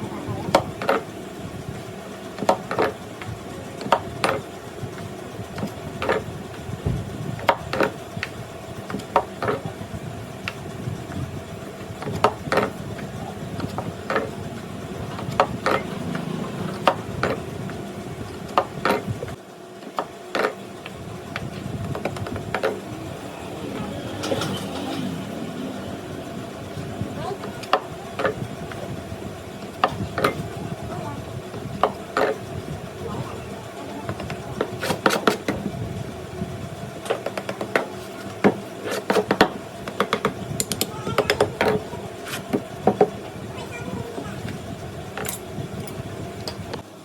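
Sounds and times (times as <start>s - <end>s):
steady mechanical hum: 0.0s - 47.0s
sharp knocks and clicks: 12.0s - 14.4s, 15.2s - 22.8s, 37.0s - 43.1s.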